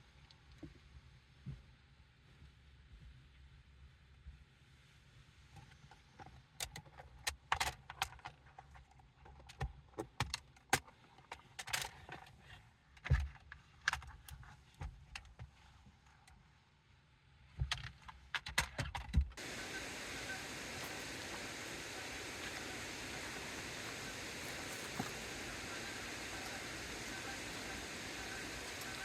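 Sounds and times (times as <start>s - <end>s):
faint low hum: 19.4s - 29.0s
steady rushing noise: 19.4s - 29.0s.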